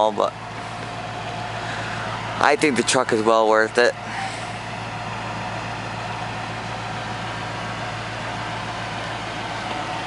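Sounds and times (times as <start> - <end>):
pickup truck engine idling: 0.0 - 10.0.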